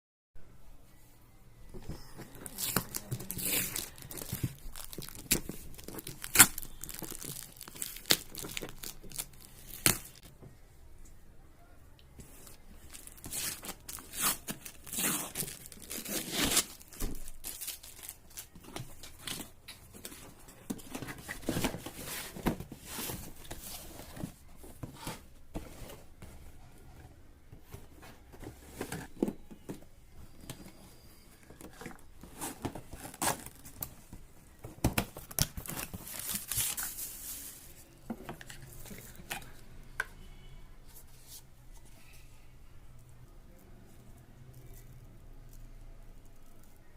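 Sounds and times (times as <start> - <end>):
packaging tearing and crinkling: 2.4 - 10.2, 12.9 - 19.5
handling noises: 12.2 - 39.6.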